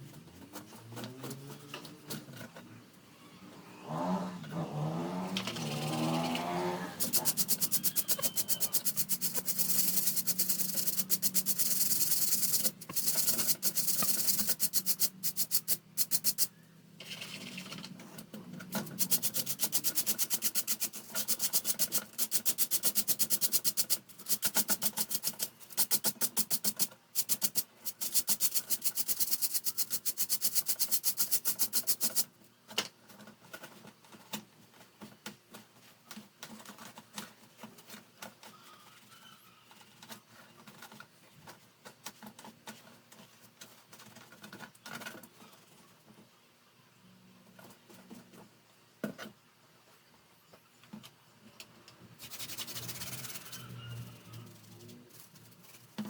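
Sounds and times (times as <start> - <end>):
scrubbing strokes: 52.2 - 56.0.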